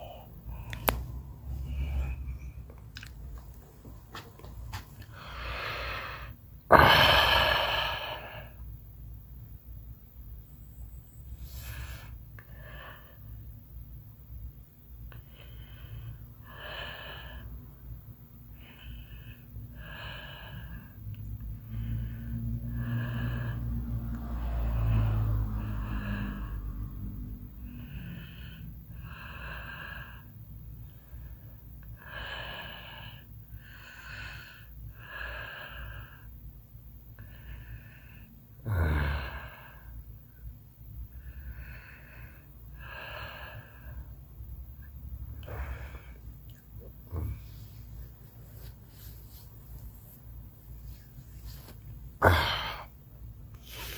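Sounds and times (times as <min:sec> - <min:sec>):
person breathing heavily: 0:00.0 - 0:02.7, 0:04.1 - 0:08.6, 0:11.4 - 0:13.4, 0:15.2 - 0:17.6, 0:18.5 - 0:30.4, 0:31.0 - 0:36.4, 0:37.1 - 0:40.0, 0:41.1 - 0:53.9
person snoring: 0:05.4 - 0:08.6, 0:38.6 - 0:39.8, 0:52.2 - 0:52.9.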